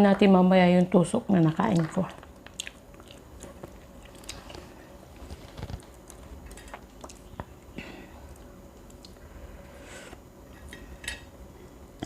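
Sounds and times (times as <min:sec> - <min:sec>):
person chewing food: 0:02.2 - 0:09.3.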